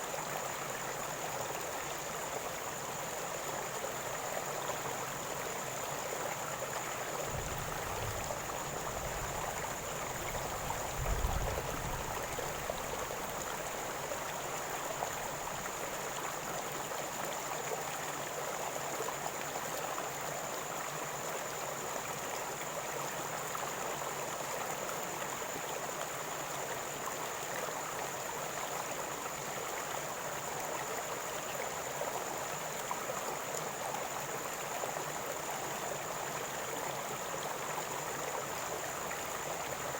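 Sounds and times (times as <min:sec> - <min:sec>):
river water gurgling over stones: 0:00.0 - 0:21.9.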